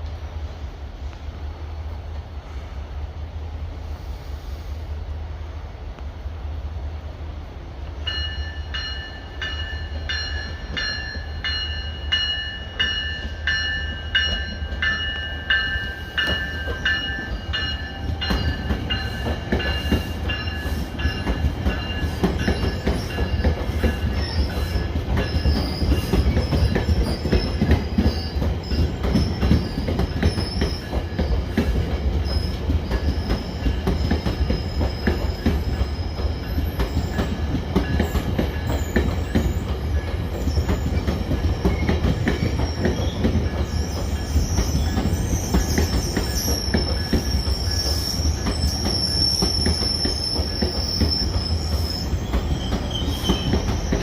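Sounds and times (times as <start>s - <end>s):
train wheels clicking on rail joints: 7.8s - 54.0s
bell striking: 8.1s - 23.4s
train wheels squealing: 8.1s - 54.0s.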